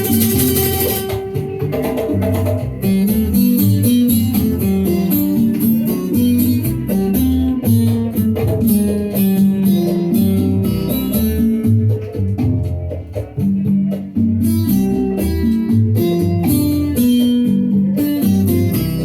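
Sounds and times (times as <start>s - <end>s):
bass line: 0.0s - 19.0s
plucked string melody: 0.0s - 19.0s
steady percussion: 0.0s - 19.0s.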